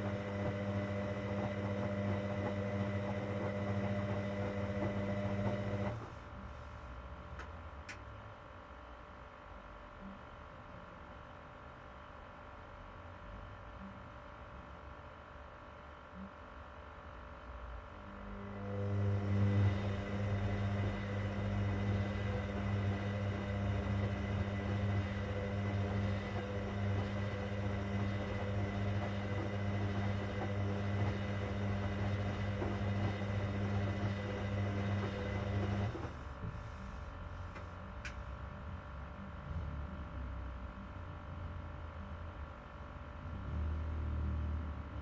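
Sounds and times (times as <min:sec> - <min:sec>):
washing machine rushing noise: 0:00.0 - 0:06.2, 0:18.5 - 0:37.3
washing machine hum: 0:00.0 - 0:08.0, 0:18.3 - 0:39.9.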